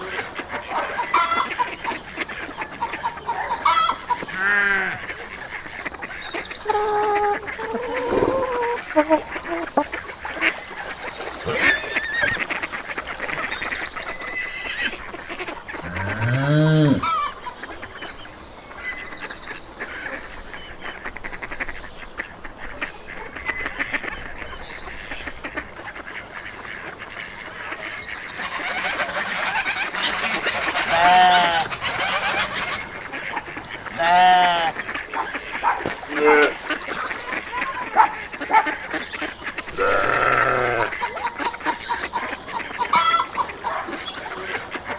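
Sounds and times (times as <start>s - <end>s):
small animal and bird sounds: 0.0s - 44.9s
animal honking calls: 6.6s - 9.9s, 11.4s - 12.5s, 15.8s - 17.3s, 28.5s - 41.1s.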